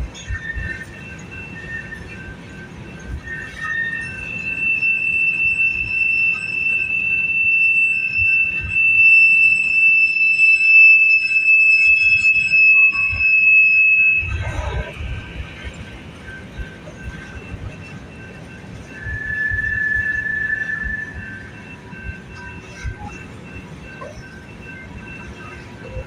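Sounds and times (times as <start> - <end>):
train wheels squealing on rails: 0.0 - 26.0
low rumble: 13.8 - 24.0.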